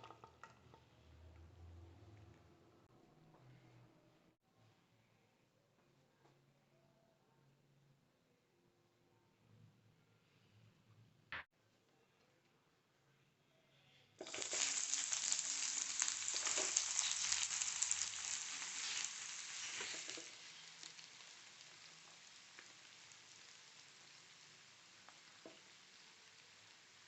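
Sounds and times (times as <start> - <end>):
food sizzling in hot oil: 14.2 - 27.0.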